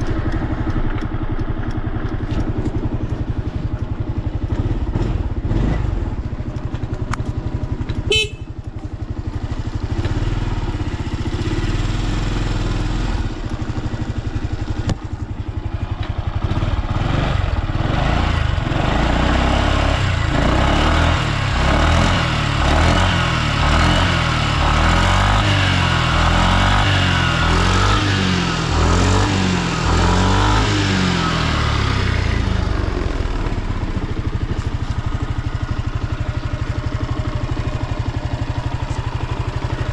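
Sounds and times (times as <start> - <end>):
scooter engine idling and revving: 0.0 - 39.9.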